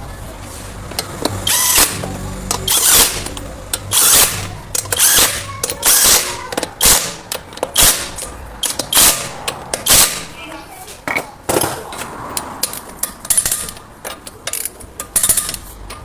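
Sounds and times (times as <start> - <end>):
power tool bursts: 1.4 - 2.0, 2.6 - 10.4.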